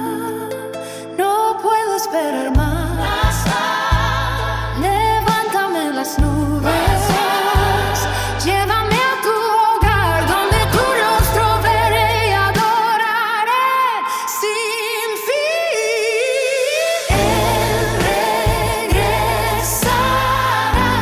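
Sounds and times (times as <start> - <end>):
person singing: 0.0 - 21.0
bass line: 2.6 - 5.3, 6.2 - 9.0, 9.8 - 12.6, 17.1 - 21.0.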